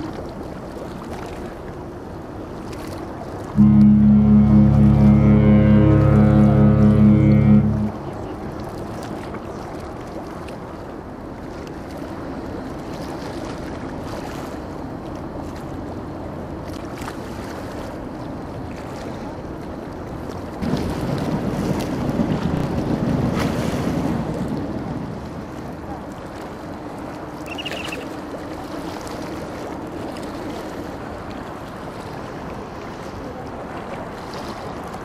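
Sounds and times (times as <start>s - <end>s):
water rushing: 3.4s - 9.8s
deep steady tone: 3.5s - 8.7s
wind buffeting microphone: 20.6s - 25.9s.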